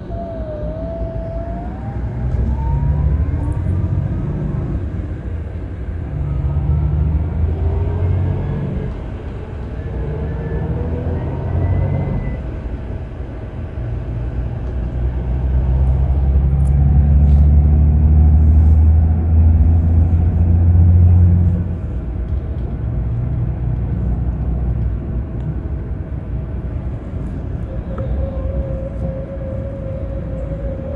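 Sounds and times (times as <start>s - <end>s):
diesel engine droning: 0.0s - 30.9s.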